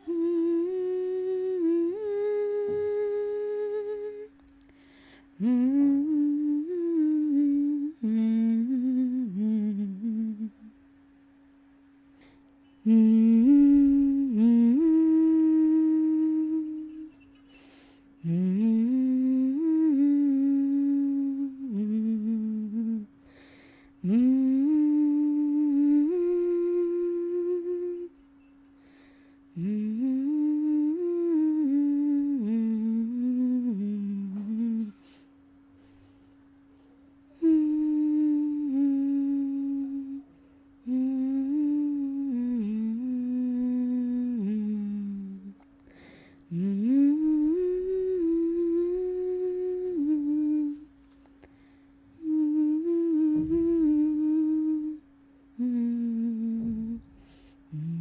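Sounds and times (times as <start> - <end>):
person humming: 0.0 - 10.8, 12.2 - 36.2, 37.2 - 58.0.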